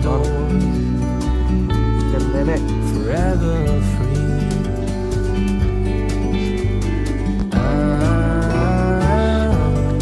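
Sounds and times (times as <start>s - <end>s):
acoustic guitar song: 0.0s - 10.0s.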